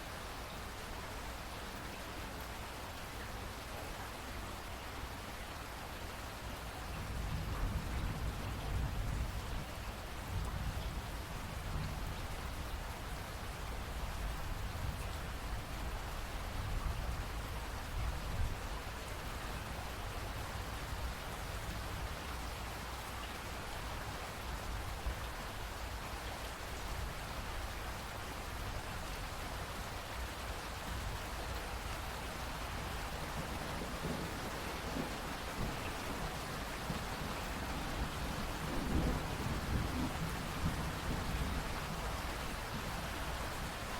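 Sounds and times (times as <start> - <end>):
steady rain hiss: 0.0 - 43.9
low rumble of thunder: 7.0 - 15.9, 32.7 - 43.8.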